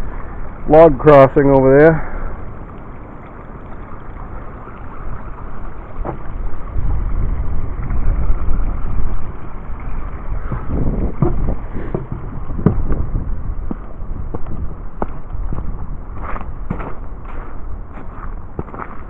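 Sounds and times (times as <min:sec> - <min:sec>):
creek flowing: 0:00.0 - 0:19.0
wind buffeting microphone: 0:04.0 - 0:19.0
short knocks: 0:10.5 - 0:13.0.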